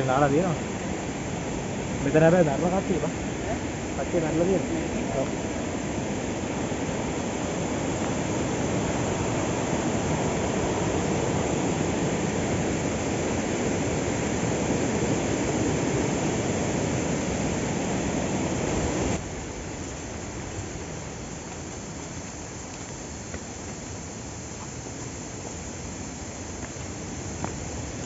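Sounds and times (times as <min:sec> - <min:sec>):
stream water rushing: 0:00.0 - 0:19.2.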